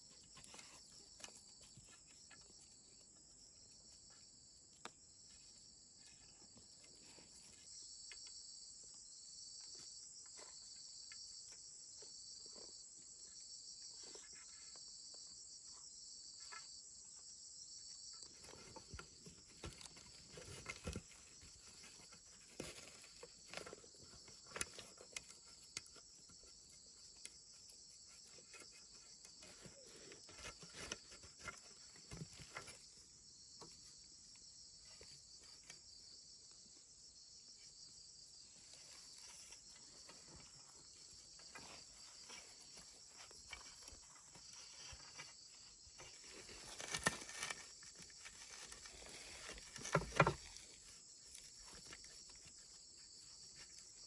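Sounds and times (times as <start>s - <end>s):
rustling: 0.0s - 7.7s, 18.2s - 33.1s, 38.4s - 54.0s
insects chirping: 0.0s - 54.0s.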